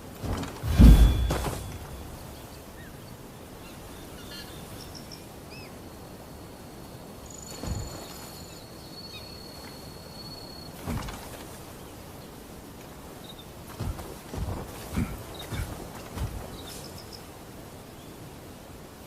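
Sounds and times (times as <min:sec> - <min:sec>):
pole weapon whooshing: 0:00.2 - 0:02.3
birds chirping: 0:13.1 - 0:18.2.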